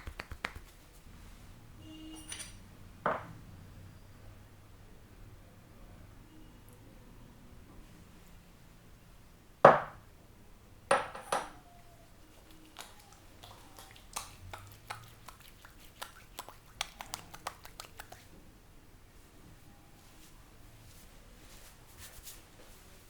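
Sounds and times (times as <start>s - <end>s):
hand slaps on head: 0.0s - 0.8s
light hand taps and clicks: 0.0s - 0.8s, 16.0s - 18.3s.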